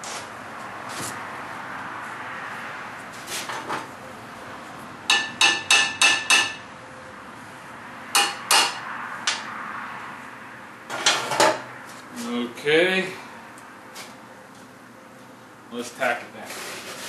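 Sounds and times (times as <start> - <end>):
hammer striking steel: 5.1 - 6.6, 8.2 - 9.4.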